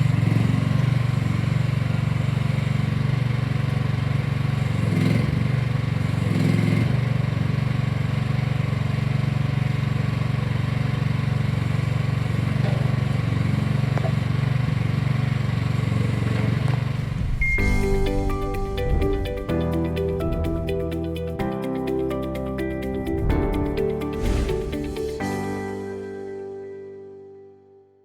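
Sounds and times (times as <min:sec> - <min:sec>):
excavator engine running: 0:07.4 - 0:25.5.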